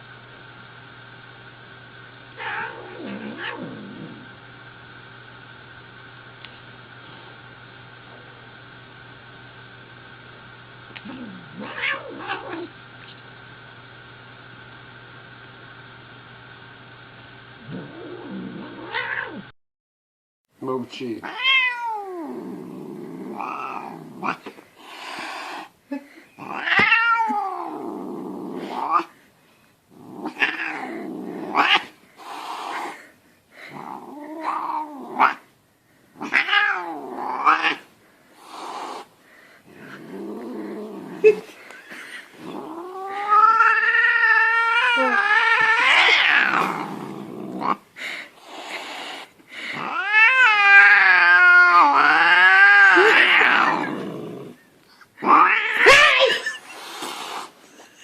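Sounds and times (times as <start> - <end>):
cat yowling and growling: 2.4 - 4.2, 11.0 - 12.7, 17.6 - 19.5, 21.2 - 24.4, 26.4 - 29.2, 30.0 - 33.0, 33.7 - 35.5, 36.2 - 39.1, 39.7 - 41.5, 42.4 - 47.8, 48.7 - 57.6.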